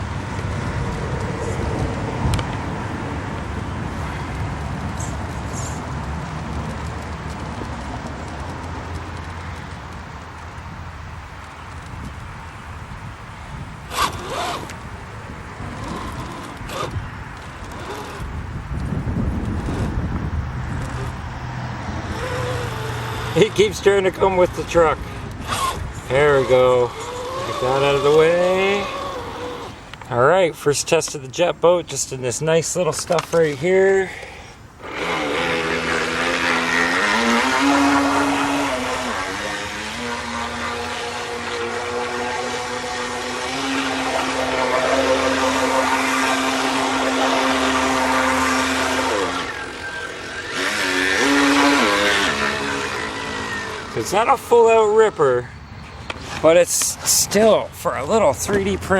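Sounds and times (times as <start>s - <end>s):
toy truck motor whirring: 0.8s - 10.8s, 13.8s - 31.2s, 32.9s - 55.3s, 56.0s - 57.5s.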